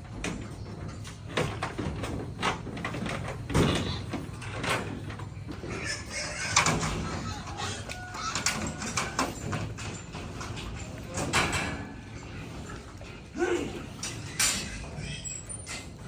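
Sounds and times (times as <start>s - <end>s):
pigs grunting: 0.0s - 16.0s
pig rising call: 5.7s - 9.4s.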